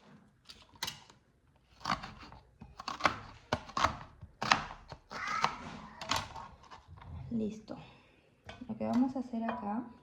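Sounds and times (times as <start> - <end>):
knife chopping onion: 1.7 - 5.7.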